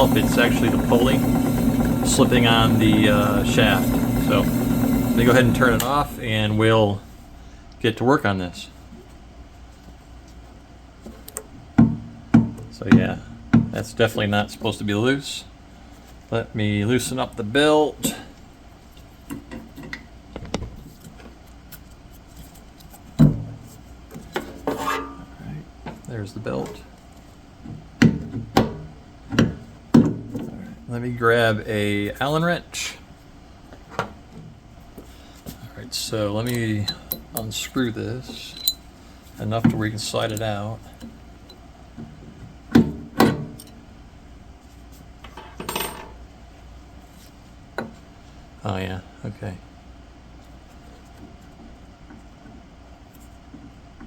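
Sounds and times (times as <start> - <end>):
drill press clicks and taps: 0.0 - 6.2
metal parts clinking: 38.4 - 38.8.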